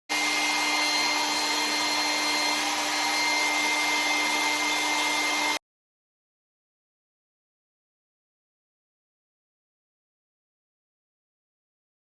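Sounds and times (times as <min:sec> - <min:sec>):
hair dryer blowing: 0:00.0 - 0:05.6.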